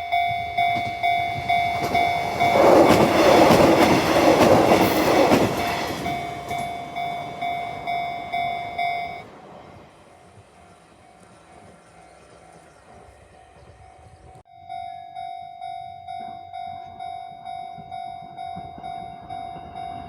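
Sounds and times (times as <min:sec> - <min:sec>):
crossing warning bell dinging: 0:00.0 - 0:20.0
train passing: 0:00.0 - 0:20.0.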